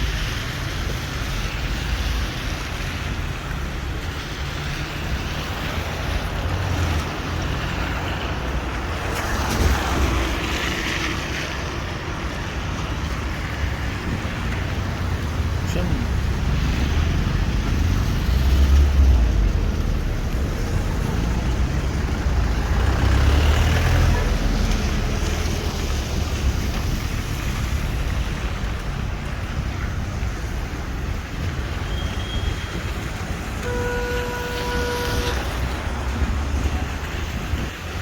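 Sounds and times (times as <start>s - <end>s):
road traffic on wet street: 0.0s - 38.0s
car horn toot: 33.6s - 35.8s.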